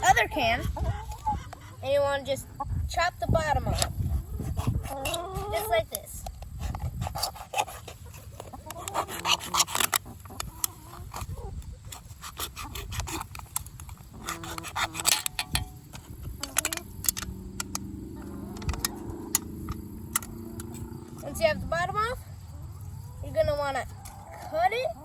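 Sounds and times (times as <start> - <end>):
knife cutting aluminium can: 12.2 - 17.2.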